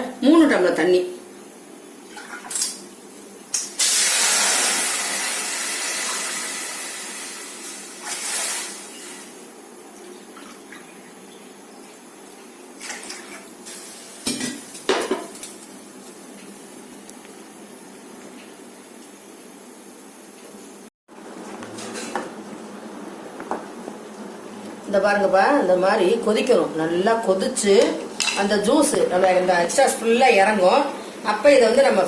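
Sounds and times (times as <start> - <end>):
water hissing in hot pan: 3.6 - 9.5, 13.6 - 17.0.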